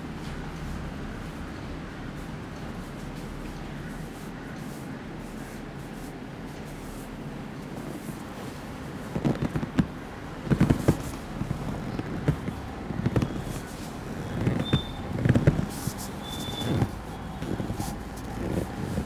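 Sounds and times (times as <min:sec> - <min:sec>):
hands slapping and tapping: 0:08.3 - 0:19.0.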